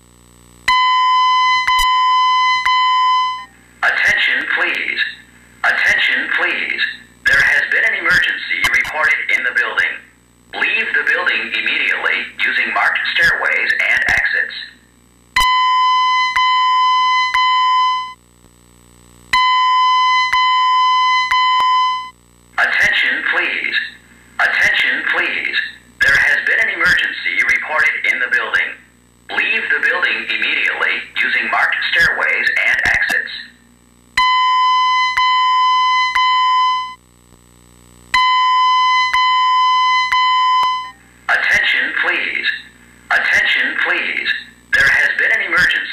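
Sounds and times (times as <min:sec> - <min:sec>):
loud alarm tone: 0:00.7 - 0:03.6, 0:15.4 - 0:18.2, 0:19.4 - 0:22.1, 0:34.2 - 0:37.0, 0:38.2 - 0:41.0
loud electronic evacuation beeps: 0:00.7 - 0:06.1, 0:15.4 - 0:18.2, 0:19.4 - 0:22.2, 0:34.2 - 0:37.0, 0:38.2 - 0:41.6.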